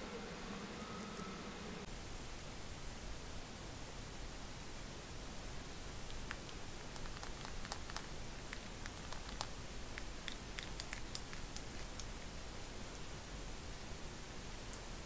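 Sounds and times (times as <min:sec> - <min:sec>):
steady hiss: 0:00.0 - 0:15.0
owl beak clicking while drinking: 0:06.0 - 0:12.4.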